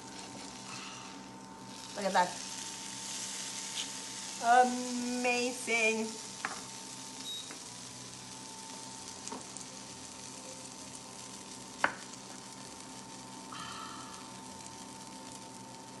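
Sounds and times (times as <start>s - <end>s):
butter sizzling in a pan: 0.0s - 16.0s.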